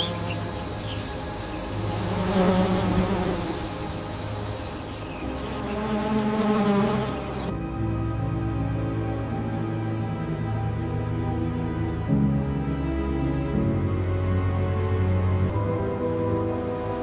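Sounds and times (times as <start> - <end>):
pulsing insect buzz: 0.0 - 7.5
slow droning music: 0.0 - 17.0.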